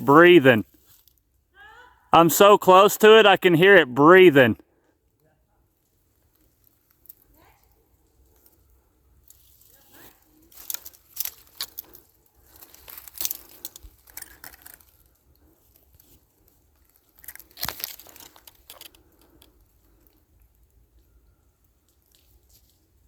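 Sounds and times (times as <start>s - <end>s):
rustling in dry leaves: 9.2s - 13.6s.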